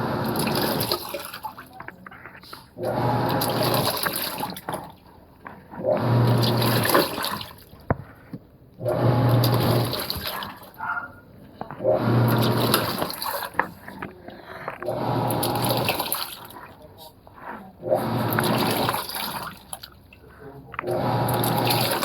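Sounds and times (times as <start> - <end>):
washing machine motor humming: 0.0 - 5.0, 5.7 - 7.8, 8.8 - 22.0
water sloshing: 0.0 - 8.2, 8.9 - 22.0.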